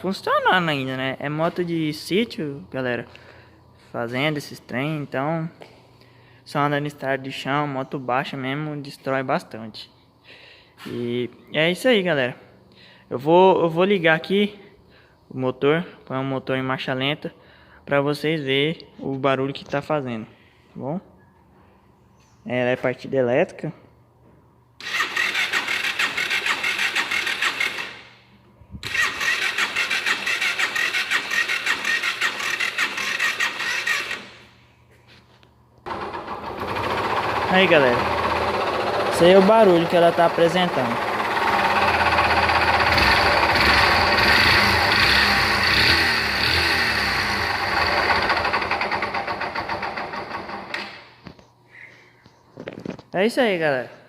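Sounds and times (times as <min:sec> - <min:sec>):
electric starter cranking engine: 0:24.8 - 0:28.1, 0:28.8 - 0:34.5, 0:35.9 - 0:51.1.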